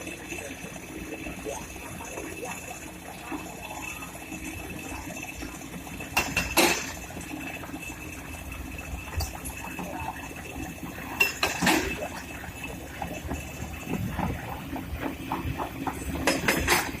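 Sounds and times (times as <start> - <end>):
excavator engine rumble: 0.0 - 17.0
water flowing: 0.0 - 17.0
sharp metal clanks: 6.1 - 7.0.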